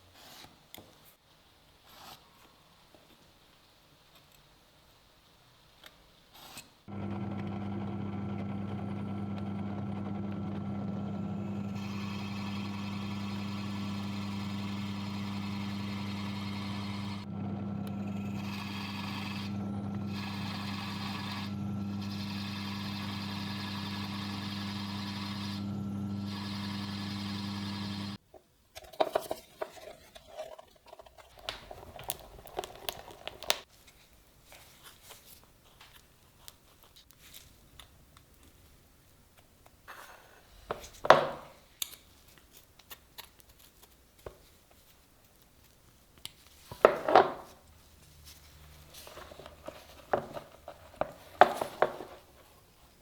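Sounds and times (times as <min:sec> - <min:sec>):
power tool motor humming: 0:06.9 - 0:28.2.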